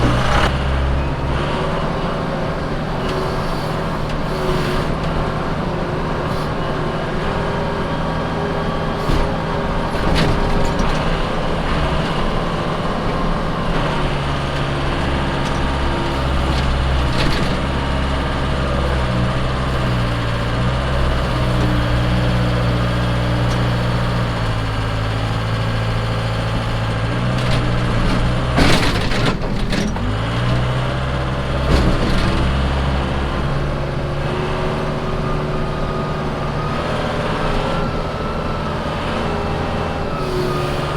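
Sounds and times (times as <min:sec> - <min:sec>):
diesel engine working: 0:00.0 - 0:40.9
metal clanks and bangs: 0:27.2 - 0:30.8.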